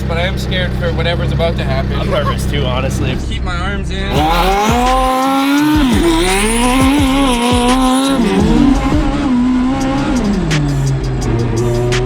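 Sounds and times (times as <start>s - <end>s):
truck engine revving: 0.0s - 12.0s
tyre noise from burnout: 4.1s - 9.5s.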